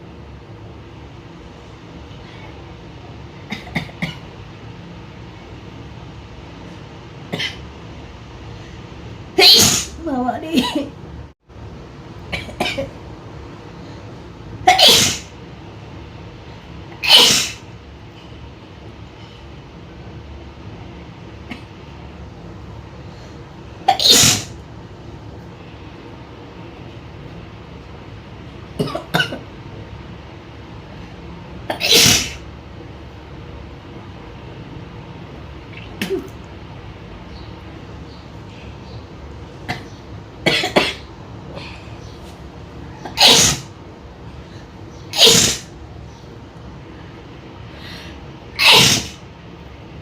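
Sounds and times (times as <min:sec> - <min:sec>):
woman sneezing: 0:09.4 - 0:10.0, 0:14.7 - 0:15.3, 0:17.0 - 0:17.6, 0:23.9 - 0:24.5, 0:31.8 - 0:32.4, 0:43.1 - 0:43.7, 0:45.2 - 0:45.7, 0:48.6 - 0:49.2.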